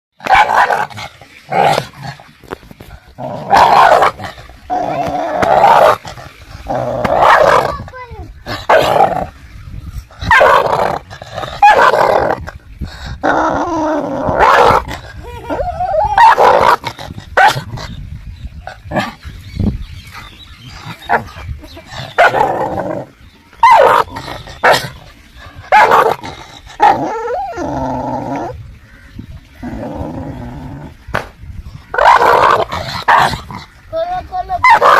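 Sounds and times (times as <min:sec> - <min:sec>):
dogs barking: 0:00.2 - 0:00.9, 0:07.0 - 0:07.7, 0:10.3 - 0:10.8, 0:11.6 - 0:12.0, 0:17.4 - 0:17.7, 0:23.6 - 0:25.0, 0:25.7 - 0:26.2, 0:31.9 - 0:33.5, 0:34.6 - 0:34.9
dogs crying: 0:14.2 - 0:16.8, 0:23.6 - 0:25.0, 0:31.9 - 0:33.4, 0:34.6 - 0:34.9.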